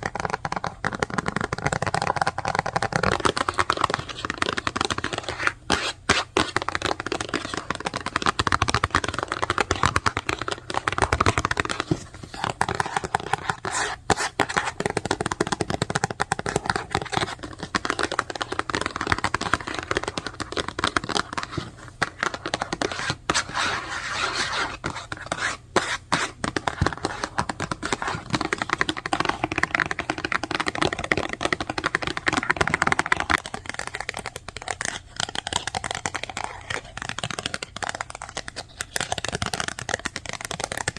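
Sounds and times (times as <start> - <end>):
fast typing on a keyboard: 0.0 - 40.9.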